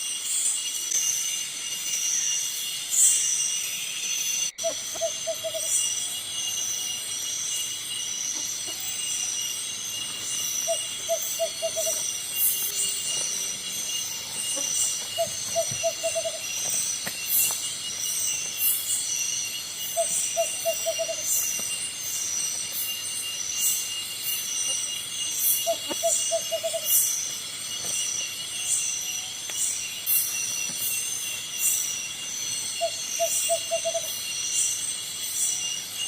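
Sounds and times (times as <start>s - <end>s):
insect chorus shrill drone: 0.0s - 36.0s.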